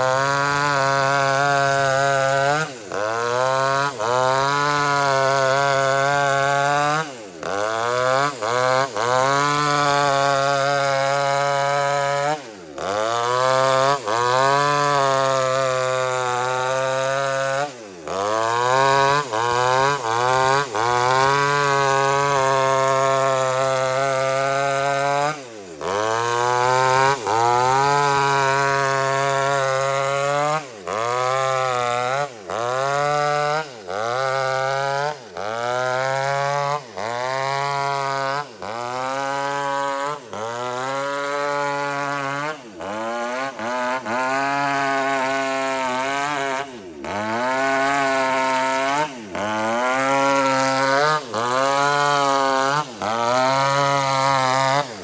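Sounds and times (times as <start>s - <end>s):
chainsaw cutting log: 0.0s - 55.0s.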